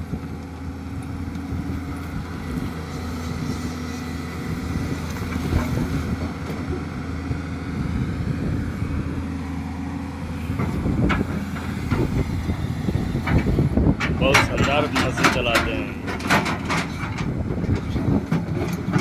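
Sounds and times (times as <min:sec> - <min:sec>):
diesel engine droning: 0:00.0 - 0:19.0
hydraulic breaker hammering: 0:13.2 - 0:17.3.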